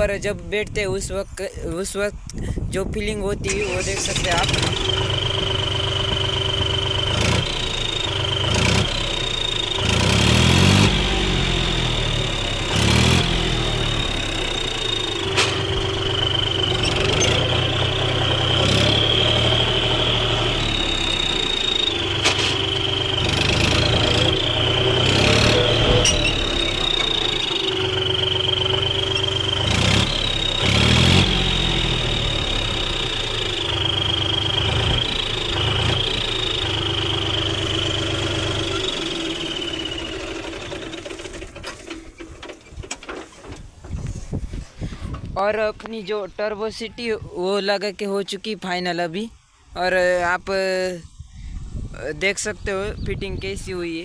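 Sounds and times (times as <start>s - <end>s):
diesel engine revving: 3.4s - 42.4s
high turbo whistle: 4.7s - 40.4s.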